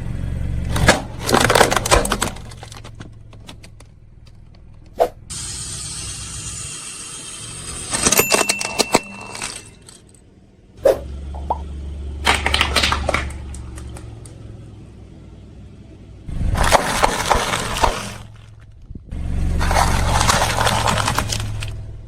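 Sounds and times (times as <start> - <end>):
car low rumble: 0.0 - 6.6, 9.3 - 22.0
tyre crushing brittle objects: 0.7 - 3.8, 12.3 - 14.3, 16.5 - 18.9, 19.5 - 21.8.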